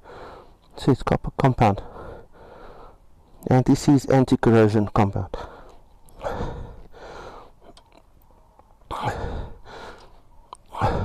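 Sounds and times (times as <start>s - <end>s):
man breathing heavily: 0.0s - 0.6s, 1.8s - 3.1s, 5.3s - 7.8s, 8.4s - 11.0s.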